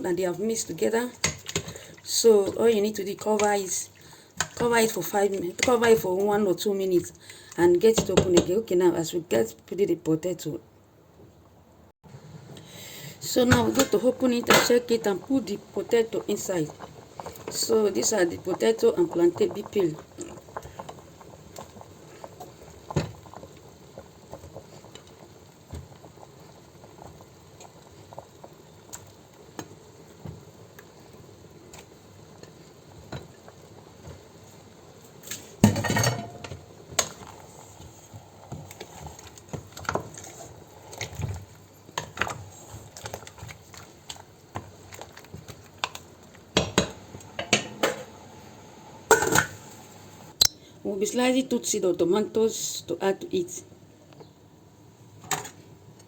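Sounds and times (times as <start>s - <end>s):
pot clattering: 35.6s - 37.2s, 46.6s - 48.1s, 49.1s - 49.6s
pots and utensils clinking: 35.6s - 37.3s, 46.6s - 48.2s, 49.1s - 49.7s.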